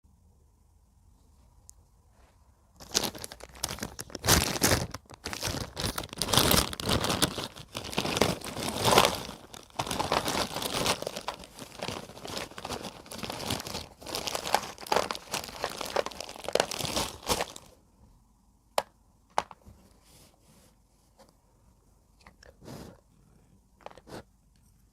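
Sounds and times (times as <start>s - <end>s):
packet crinkling and crackling: 2.8s - 17.8s.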